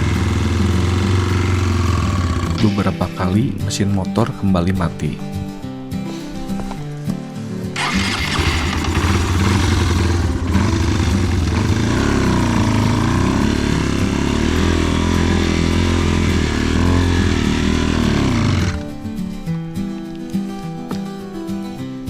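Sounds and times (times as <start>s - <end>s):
motorcycle engine revving: 0.0s - 3.0s, 7.8s - 19.0s.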